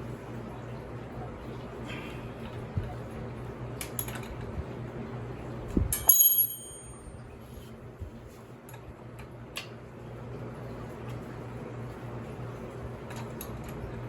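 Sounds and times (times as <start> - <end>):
metallic clink: 6.0 - 7.1.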